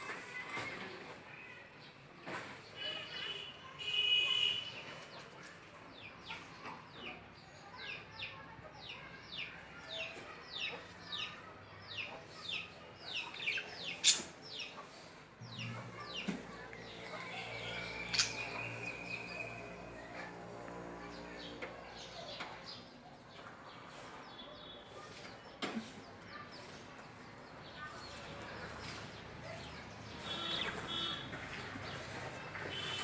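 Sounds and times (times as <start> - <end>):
lovebirds chirping: 9.0 - 19.9, 27.4 - 31.2.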